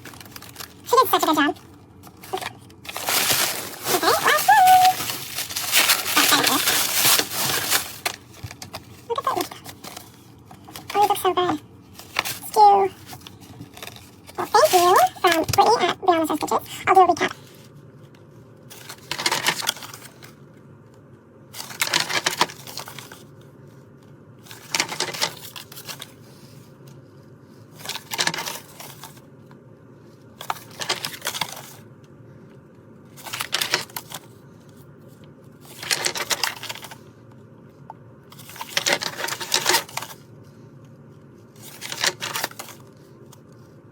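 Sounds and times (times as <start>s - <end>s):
plastic eyes rattling in bags: 0.0s - 17.4s, 35.7s - 37.0s, 38.4s - 40.2s, 41.6s - 42.9s.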